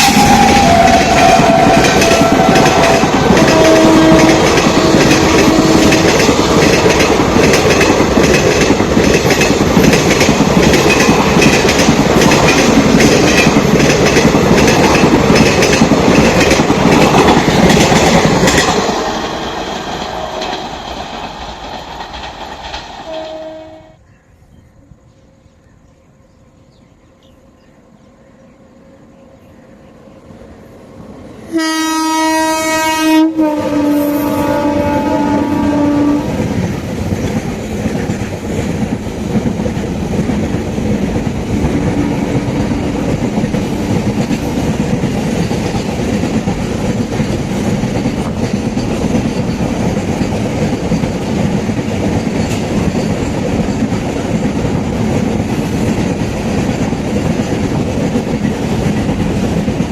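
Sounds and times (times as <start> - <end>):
train horn: 0.0 - 6.4, 18.7 - 20.6, 23.1 - 24.0, 31.5 - 36.5
train wheels rumbling on rails: 0.0 - 24.0, 30.2 - 59.9.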